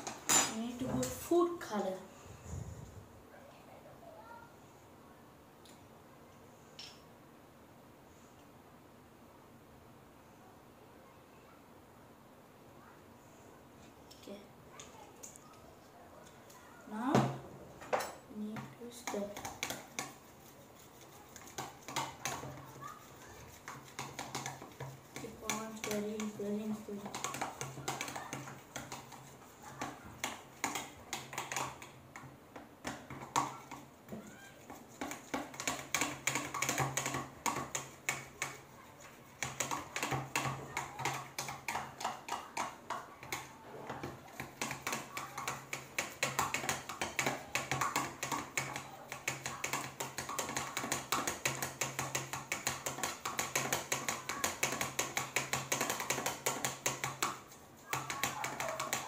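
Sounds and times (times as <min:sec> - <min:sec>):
spoon stirring sticky slime: 0:18.1 - 0:32.0, 0:32.9 - 0:43.5, 0:44.2 - 0:59.0.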